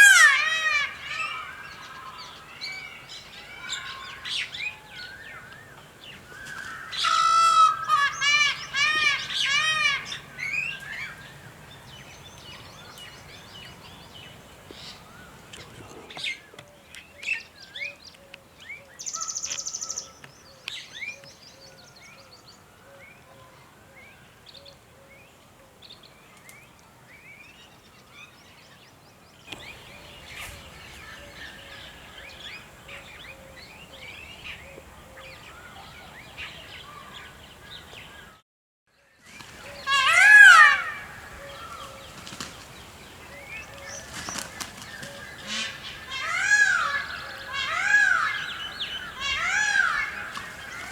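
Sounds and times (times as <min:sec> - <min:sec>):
small birds chirping and trilling: 0:00.9 - 0:38.4, 0:39.2 - 0:50.9
loud repeated bird call: 0:39.5 - 0:43.0, 0:43.7 - 0:50.9.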